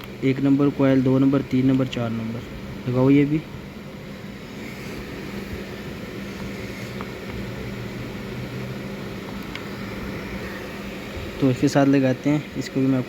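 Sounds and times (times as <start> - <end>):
machinery humming: 0.0 - 13.0.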